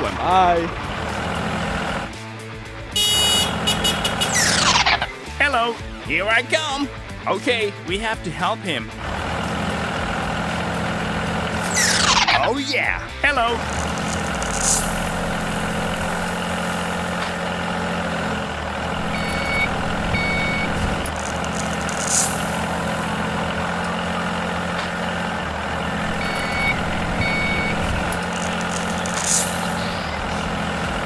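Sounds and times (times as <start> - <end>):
heavy vehicle engine running: 0.0 - 31.0
high reversing beeps: 18.9 - 24.7, 25.9 - 30.9.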